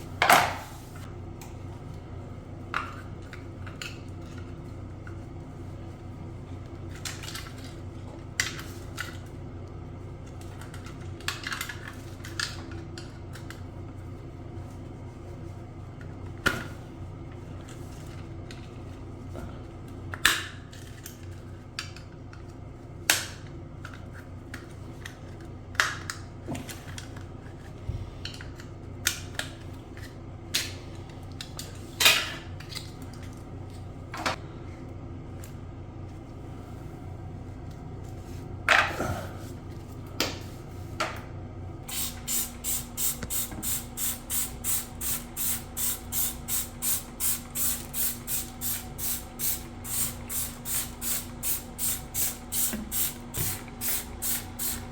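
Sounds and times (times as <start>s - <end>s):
low steady hum: 21.0s - 54.9s
sprayer spraying in bursts: 41.9s - 54.9s.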